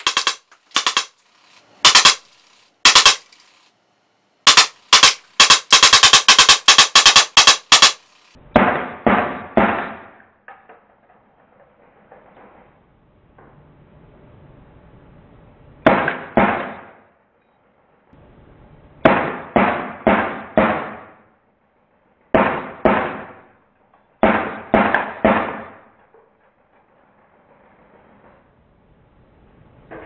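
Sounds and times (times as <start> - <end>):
bb gun shots: 0.0 - 1.1, 1.8 - 3.3, 4.5 - 8.0, 22.4 - 23.5, 24.2 - 25.9.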